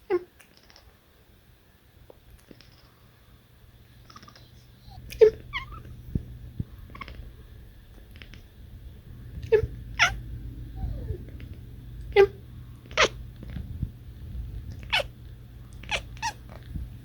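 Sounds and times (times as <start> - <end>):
cat chirping and chattering: 3.9 - 7.4, 9.4 - 13.6, 14.6 - 16.7.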